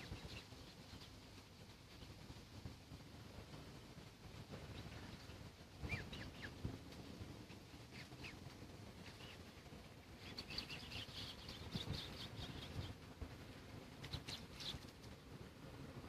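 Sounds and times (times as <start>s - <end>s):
birds chirping: 0.0s - 1.3s, 4.6s - 6.8s, 7.5s - 13.2s, 13.9s - 15.3s
low background hum: 0.0s - 16.0s.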